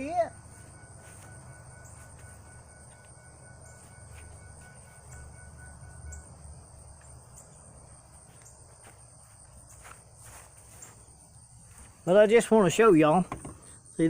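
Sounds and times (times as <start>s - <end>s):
faint tone: 0.0s - 8.1s
high-pitched whine: 0.0s - 11.1s.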